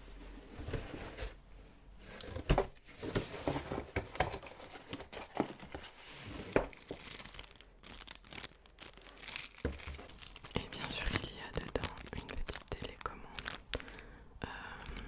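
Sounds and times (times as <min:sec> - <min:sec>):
packaging crinkling: 0:03.5 - 0:14.1.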